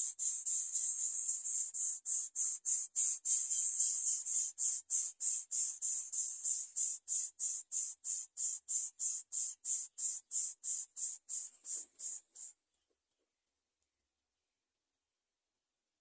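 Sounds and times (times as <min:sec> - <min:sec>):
baby birds begging calls: 0:00.0 - 0:12.5.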